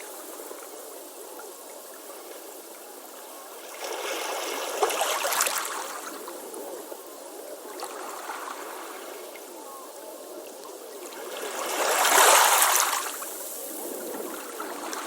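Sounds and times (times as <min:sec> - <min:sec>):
ocean waves breaking: 0:11.1 - 0:13.3.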